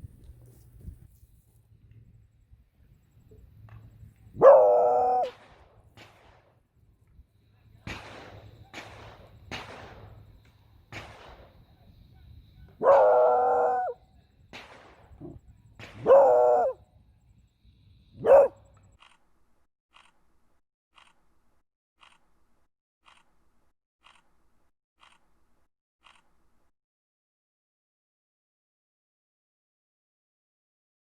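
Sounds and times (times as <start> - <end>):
dog baying: 4.4 - 5.3, 12.8 - 14.0, 16.0 - 16.8, 18.2 - 18.7
distant gunshots: 4.4 - 6.6, 7.8 - 11.9, 14.4 - 16.7
faint ticks: 21.0 - 21.3, 22.0 - 22.4, 23.0 - 23.4, 24.0 - 24.4, 25.0 - 25.4, 26.0 - 26.5.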